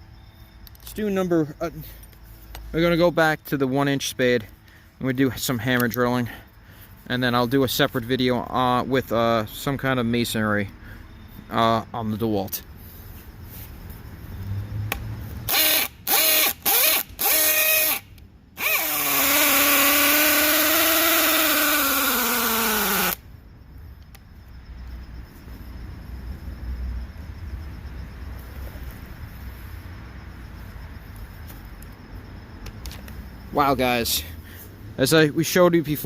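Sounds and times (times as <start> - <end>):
drill boring into wood: 15.5 - 18.0, 18.6 - 23.2.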